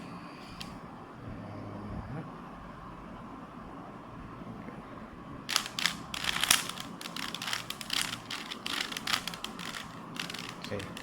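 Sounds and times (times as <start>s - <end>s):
plastic puzzle cube clicking: 5.5s - 11.0s.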